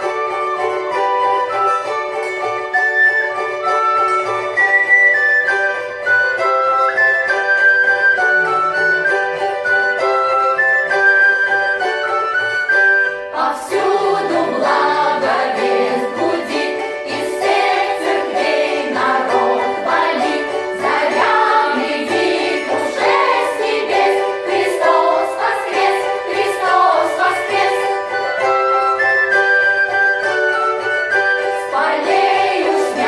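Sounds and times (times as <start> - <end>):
flute-like melody: 0.0 - 14.0, 23.0 - 32.8
vocal ensemble singing: 13.3 - 28.6, 31.5 - 33.0.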